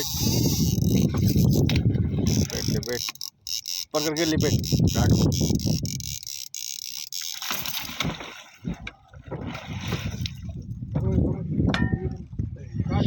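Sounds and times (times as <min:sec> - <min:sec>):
water splashing and sloshing: 0:00.0 - 0:03.4, 0:06.9 - 0:12.5.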